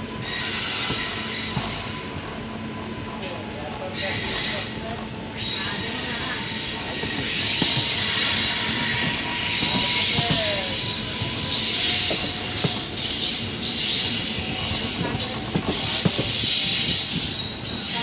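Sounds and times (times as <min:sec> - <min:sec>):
wheel and rail noise: 0:03.1 - 0:18.0
faint wheel squeals: 0:05.4 - 0:18.0.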